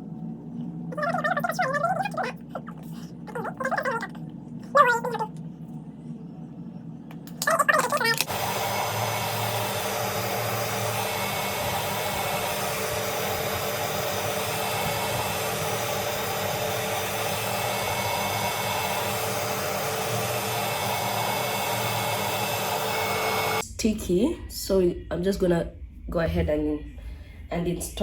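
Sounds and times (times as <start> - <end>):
hair dryer blowing: 8.2 - 23.6.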